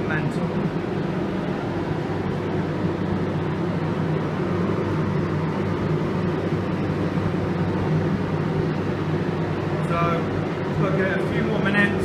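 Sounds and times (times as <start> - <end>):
extraction fans humming: 0.0 - 12.0.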